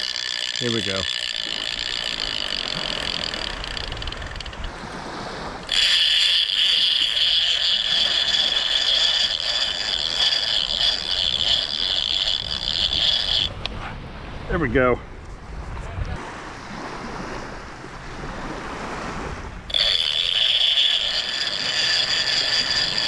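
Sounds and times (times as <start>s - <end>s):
fishing reel clicker buzzing: 0.0s - 4.8s, 5.6s - 13.7s, 19.7s - 23.0s.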